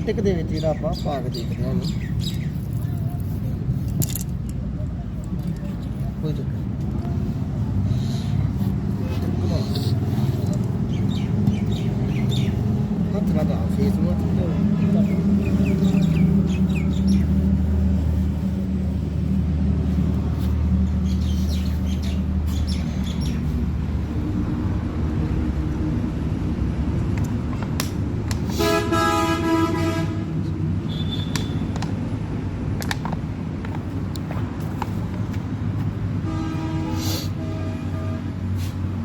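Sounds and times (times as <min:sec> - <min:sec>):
vehicle horn blaring: 0:28.6 - 0:30.3, 0:36.2 - 0:38.4.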